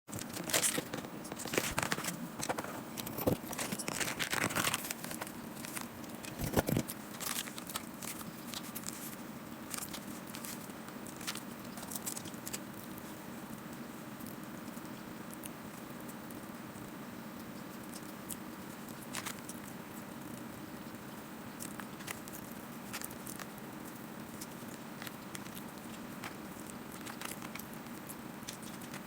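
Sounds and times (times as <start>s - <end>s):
food wrapper crinkling: 0.1s - 12.6s, 24.3s - 29.0s
low steady hum: 0.1s - 29.0s.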